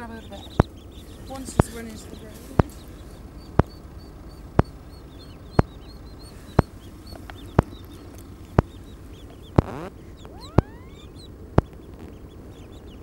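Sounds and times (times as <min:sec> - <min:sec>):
ducklings peeping: 0:00.0 - 0:13.0
sharp repeating click: 0:04.6 - 0:04.8.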